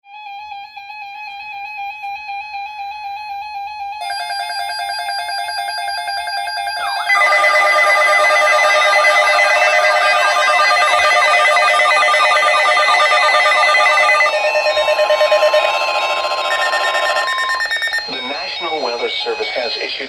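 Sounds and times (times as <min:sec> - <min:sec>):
pulsing alert tones: 0:04.0 - 0:19.8
siren-like warbles: 0:04.0 - 0:20.0.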